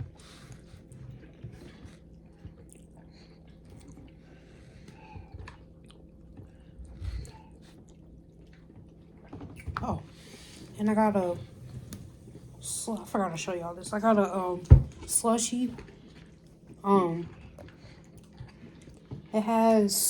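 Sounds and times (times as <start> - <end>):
person chewing food: 0.0 - 10.8, 15.8 - 19.3
dull low thump: 14.6 - 15.1.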